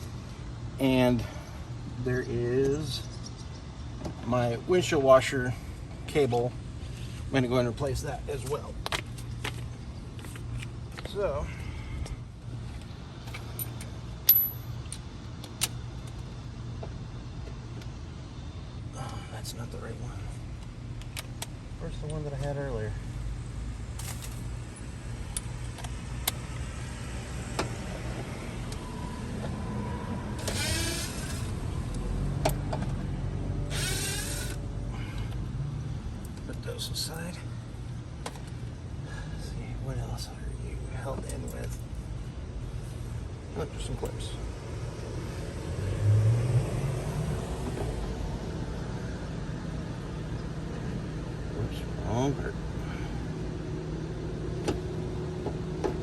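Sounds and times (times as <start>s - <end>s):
steady low hum: 0.0s - 45.8s
small power tool running: 30.4s - 31.5s, 33.7s - 34.6s.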